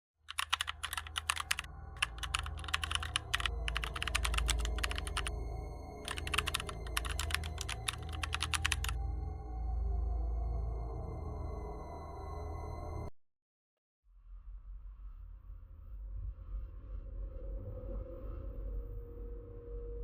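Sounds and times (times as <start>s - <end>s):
computer keyboard typing clicks: 0.3s - 5.3s, 6.0s - 9.0s.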